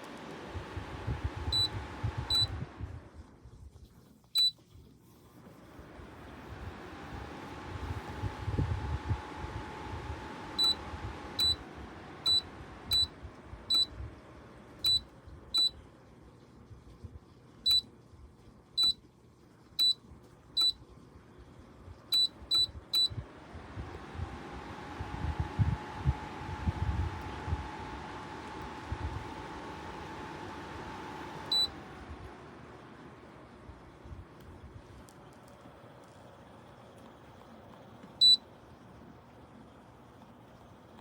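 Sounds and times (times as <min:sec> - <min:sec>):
fan humming: 0:00.0 - 0:03.5, 0:05.2 - 0:19.0, 0:19.6 - 0:41.0
short high-pitched beeps: 0:01.5 - 0:02.5, 0:11.4 - 0:11.6, 0:12.3 - 0:13.1, 0:14.8 - 0:15.0, 0:31.5 - 0:31.7.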